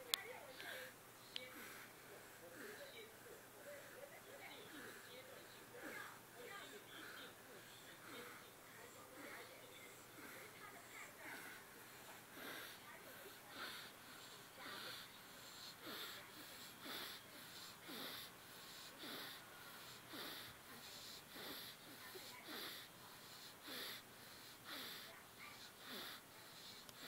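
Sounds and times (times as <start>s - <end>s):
child snoring wheezily: 10.0s - 27.0s.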